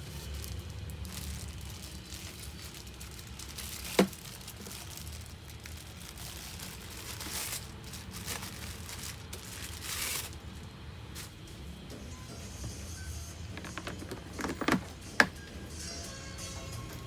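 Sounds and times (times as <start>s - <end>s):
packaging rustling and crinkling: 0.0s - 11.6s, 13.6s - 15.4s.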